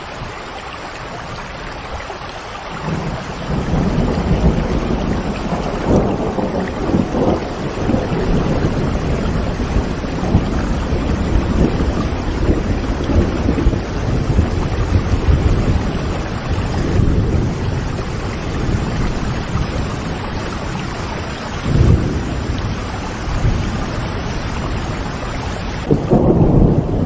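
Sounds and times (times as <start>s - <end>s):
steady rain falling: 0.0s - 27.0s
low rumble of thunder: 2.7s - 27.0s.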